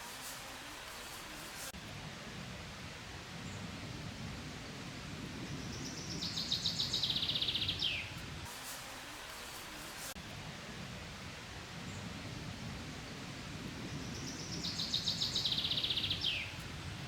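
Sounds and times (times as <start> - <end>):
outdoor hiss: 0.0 - 17.0
songbird singing: 5.5 - 8.2, 13.8 - 16.6.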